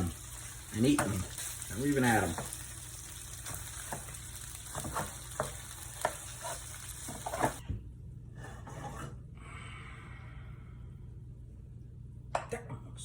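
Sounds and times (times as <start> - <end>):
fish sizzling in a pan: 0.0 - 7.6.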